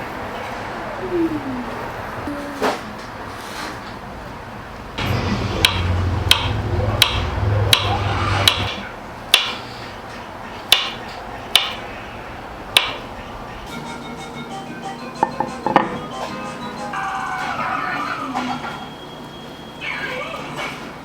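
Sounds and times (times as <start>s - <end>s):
low hum: 5.0s - 8.9s.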